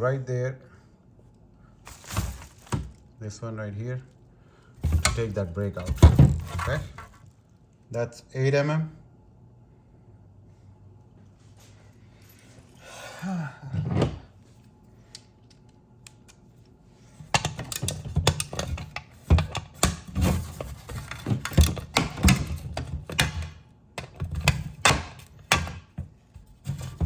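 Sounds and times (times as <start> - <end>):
tools clicking and knocking: 17.3 - 26.1.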